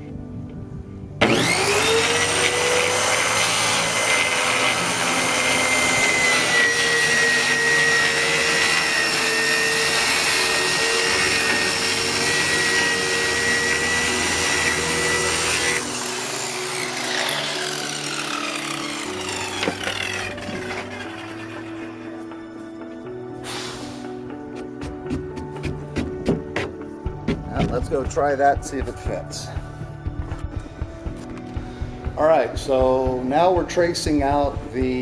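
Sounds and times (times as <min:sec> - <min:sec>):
electric power saw cutting plywood: 0:01.2 - 0:22.8.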